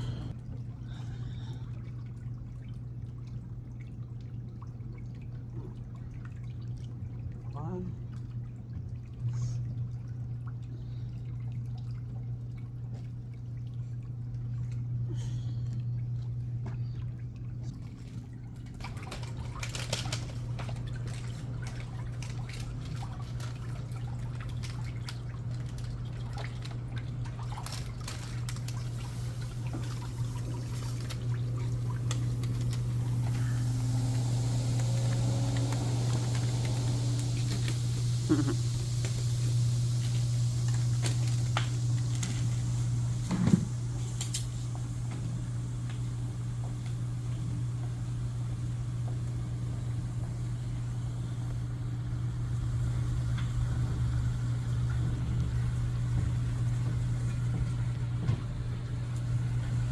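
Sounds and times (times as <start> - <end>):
low motor hum: 0.0 - 59.9
water pouring into basin: 17.4 - 50.8.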